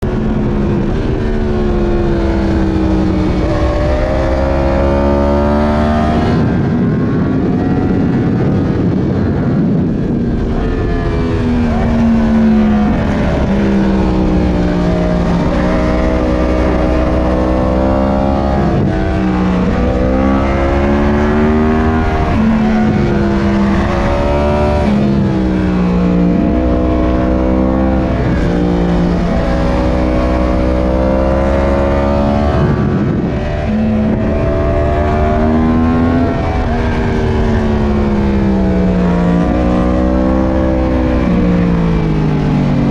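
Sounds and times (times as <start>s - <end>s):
motorcycle engine accelerating hard: 0.0s - 42.9s.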